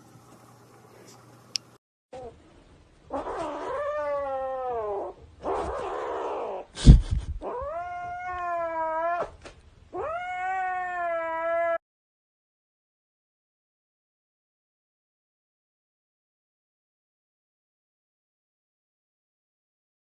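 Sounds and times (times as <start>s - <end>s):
cat yowling: 3.1s - 6.7s, 7.4s - 11.8s
rough breathy noise: 6.8s - 7.4s.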